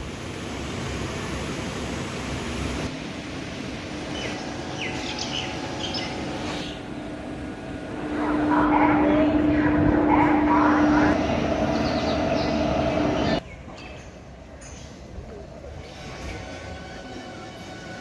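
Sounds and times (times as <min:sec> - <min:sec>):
steady low hum: 0:02.9 - 0:13.4
bird chirps: 0:04.1 - 0:06.8.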